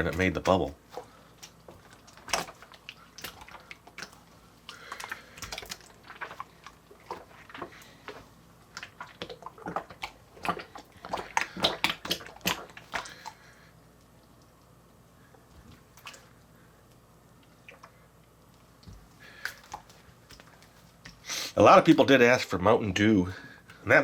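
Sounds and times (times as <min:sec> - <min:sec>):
slime squelching and popping: 0:00.0 - 0:14.6, 0:17.5 - 0:21.2.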